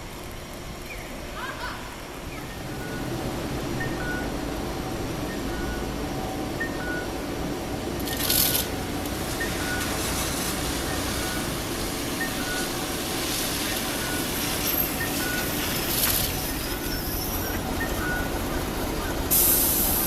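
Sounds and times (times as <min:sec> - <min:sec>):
tram equipment running: 0:00.0 - 0:20.0
faint high beeps: 0:03.8 - 0:04.4, 0:05.0 - 0:07.2, 0:09.3 - 0:10.0, 0:10.8 - 0:11.6, 0:12.2 - 0:12.8, 0:13.9 - 0:15.6, 0:16.4 - 0:20.0
air release hiss: 0:19.3 - 0:20.0.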